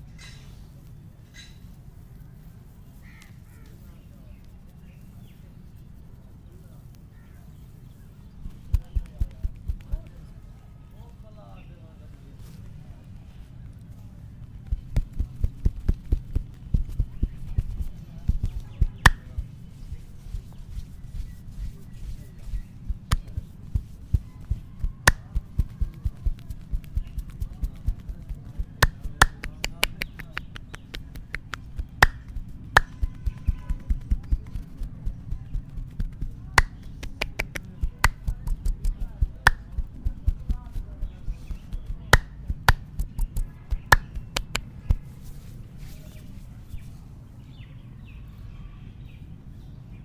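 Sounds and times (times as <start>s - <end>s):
sharp snap: 8.4s - 10.0s, 17.7s - 20.5s, 22.9s - 34.8s, 36.0s - 40.3s, 41.5s - 45.1s
hand slaps on head: 8.4s - 10.1s, 14.6s - 20.0s, 22.9s - 28.1s, 28.7s - 34.9s, 36.0s - 40.6s, 41.5s - 45.1s
palms thumping on body: 8.4s - 10.2s, 14.6s - 45.2s.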